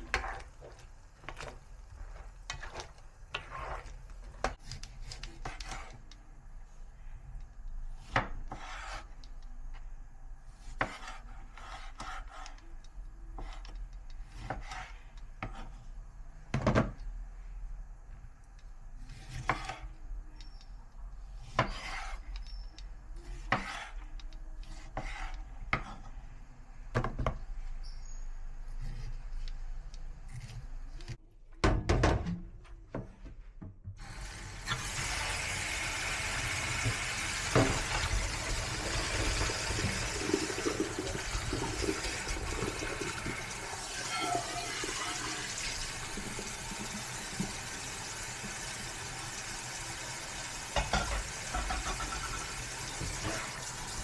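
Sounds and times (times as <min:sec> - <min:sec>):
tap running: 0:36.4 - 0:43.6, 0:46.2 - 0:48.8.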